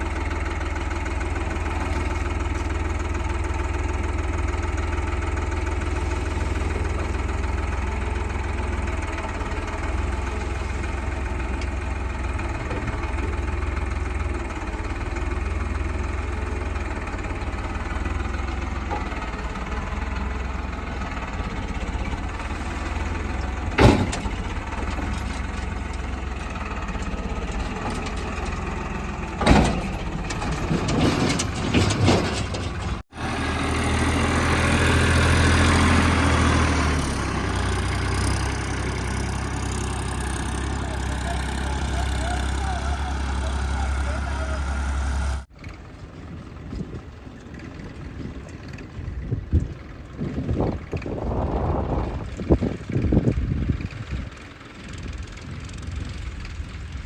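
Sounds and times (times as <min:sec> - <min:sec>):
backhoe diesel engine running: 0:00.0 - 0:57.0
knocks and clanks: 0:23.0 - 0:26.1, 0:26.9 - 0:33.0.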